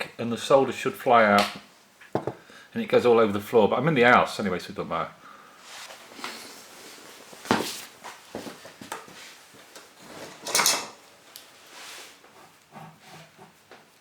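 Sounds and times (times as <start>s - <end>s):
hard objects knocking on work surface: 2.1s - 2.4s.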